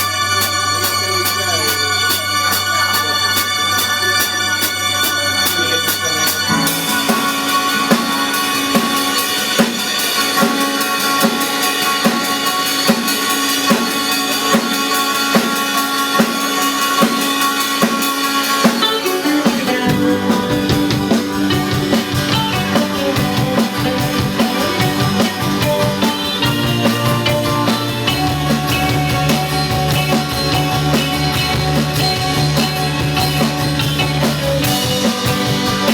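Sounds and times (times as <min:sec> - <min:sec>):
drum kit beat: 0:00.0 - 0:35.9
pop band playing live: 0:00.0 - 0:35.9
low bass line: 0:19.9 - 0:35.9.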